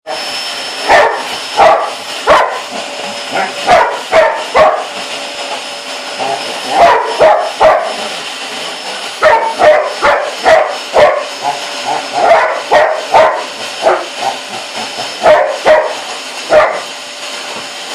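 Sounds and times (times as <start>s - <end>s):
vacuum cleaner motor hum: 0.1s - 17.9s
dog barking: 0.9s - 2.7s, 3.4s - 4.9s, 6.7s - 8.0s, 9.2s - 11.6s, 12.2s - 14.1s, 15.2s - 16.8s.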